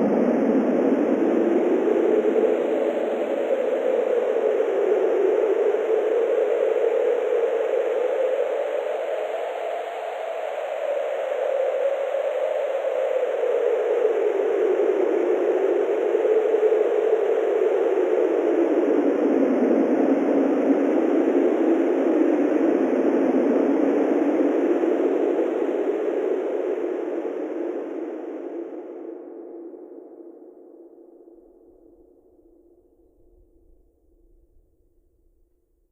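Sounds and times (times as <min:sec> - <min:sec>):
low wind tone: 0:30.8 - 0:35.9.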